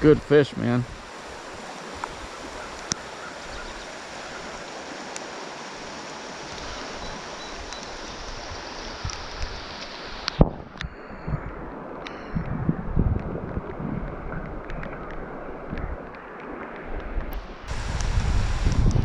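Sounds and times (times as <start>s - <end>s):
running water hissing: 0.0s - 11.3s, 16.2s - 19.0s
faint ticks: 2.0s - 3.0s.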